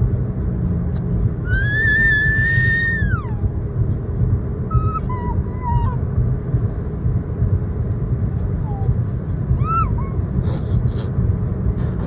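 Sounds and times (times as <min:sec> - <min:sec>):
car road rumble: 0:00.0 - 0:12.0
puppy whining: 0:01.4 - 0:03.5, 0:04.7 - 0:06.0, 0:08.6 - 0:10.6.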